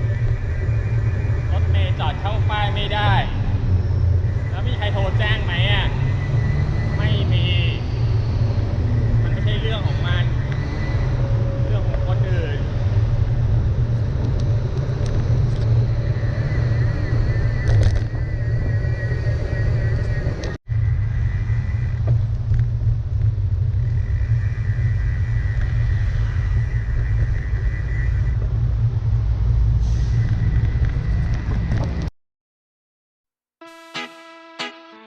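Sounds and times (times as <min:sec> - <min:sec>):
cars driving past: 0:00.0 - 0:22.1.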